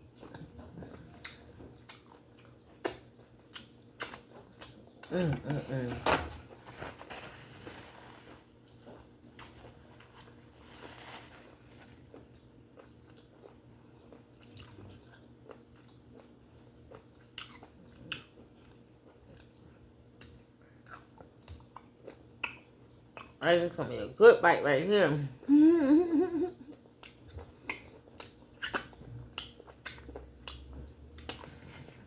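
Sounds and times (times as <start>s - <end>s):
person chewing: 0.1s - 5.4s, 8.5s - 10.5s, 11.4s - 23.4s, 26.5s - 32.0s.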